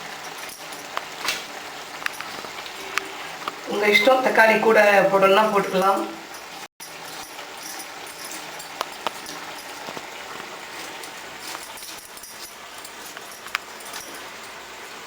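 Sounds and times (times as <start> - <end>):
pot simmering: 0.0 - 15.0.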